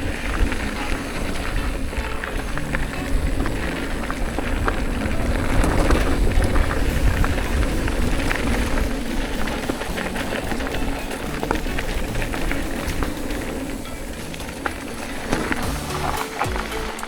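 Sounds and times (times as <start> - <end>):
wind buffeting microphone: 0.0 - 15.7
crackle of ground contact: 0.0 - 16.9.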